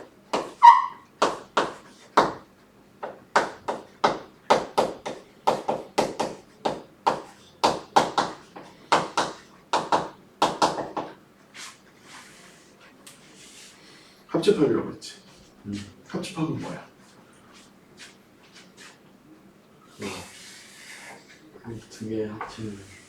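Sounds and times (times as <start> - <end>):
writing taps and scratches on board: 0.3 - 2.4, 3.0 - 11.2
pitched squeak: 0.6 - 1.1.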